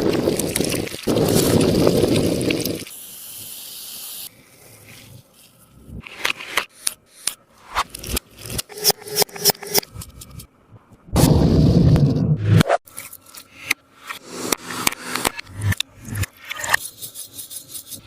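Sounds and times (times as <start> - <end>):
sticky crackles and clicks: 0.0 - 2.9.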